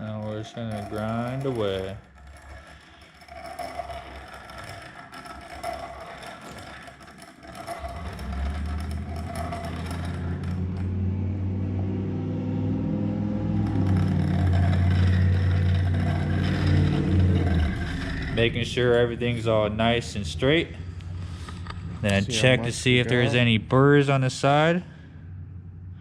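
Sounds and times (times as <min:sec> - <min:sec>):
filer scraping metal: 0:00.0 - 0:10.9, 0:13.5 - 0:24.6
steady low hum: 0:07.7 - 0:26.0.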